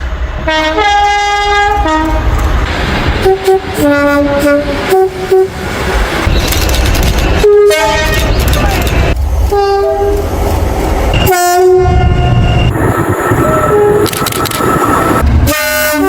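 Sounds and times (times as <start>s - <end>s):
rumble and clatter of passing train: 0.0s - 16.0s
train two-tone horn blasts: 0.4s - 2.4s, 3.2s - 5.6s, 7.4s - 8.3s, 9.5s - 10.2s, 11.2s - 12.8s, 15.4s - 16.0s.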